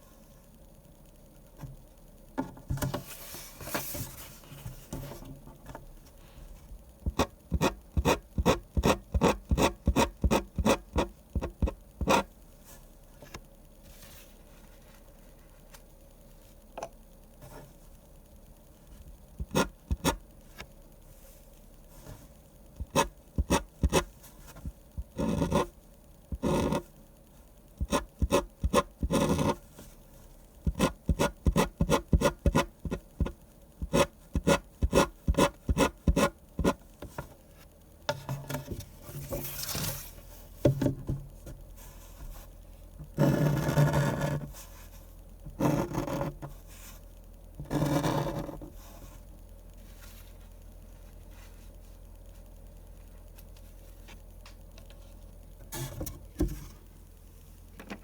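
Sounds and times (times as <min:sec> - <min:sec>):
pen scratching on paper: 0:07.1 - 0:12.3, 0:19.4 - 0:20.2, 0:22.8 - 0:24.1, 0:25.2 - 0:25.7, 0:26.4 - 0:26.8, 0:27.8 - 0:29.6, 0:30.7 - 0:36.8, 0:43.2 - 0:44.6, 0:45.6 - 0:46.4, 0:47.6 - 0:49.0.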